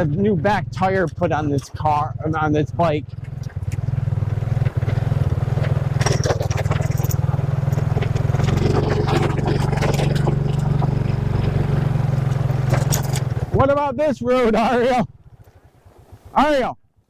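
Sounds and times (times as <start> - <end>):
motorcycle engine running: 0.0 - 17.0
clicks and rattles: 3.0 - 13.6.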